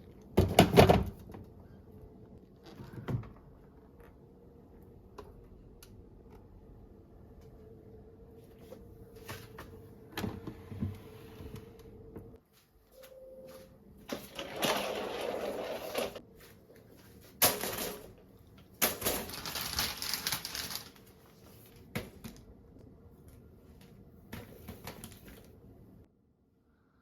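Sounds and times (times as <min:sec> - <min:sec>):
crinkly rustling: 0:18.9 - 0:22.4.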